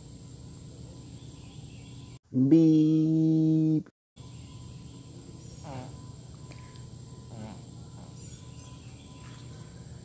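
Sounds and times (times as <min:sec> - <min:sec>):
high-pitched insect drone: 0:04.2 - 0:10.0.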